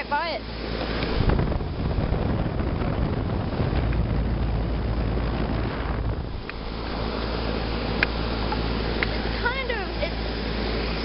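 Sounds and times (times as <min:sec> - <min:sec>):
compressor humming: 0:00.0 - 0:11.0
condenser fan rushing: 0:00.0 - 0:11.0
wind buffeting microphone: 0:00.0 - 0:11.0.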